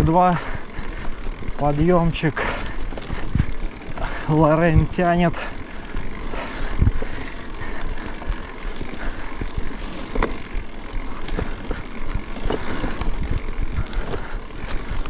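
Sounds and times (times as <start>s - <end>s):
bike knocks and rattles: 0.0s - 15.0s
bike tyre noise: 0.0s - 15.0s
wind rumble on microphone: 6.6s - 7.4s, 11.2s - 15.0s.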